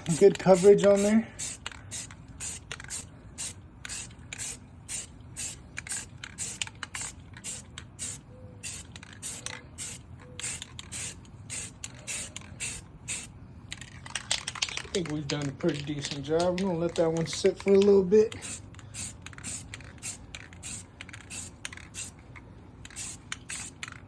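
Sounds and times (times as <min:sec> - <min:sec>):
spray can hissing bursts: 0:00.0 - 0:13.3, 0:18.4 - 0:22.2, 0:22.9 - 0:23.8.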